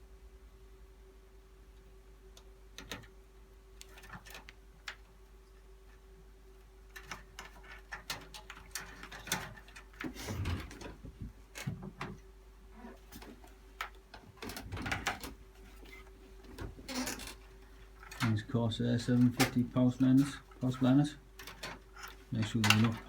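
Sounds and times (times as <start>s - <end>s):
clicks and taps of computer parts: 2.4s - 3.1s
knocks and rattles in metal case: 14.2s - 15.8s.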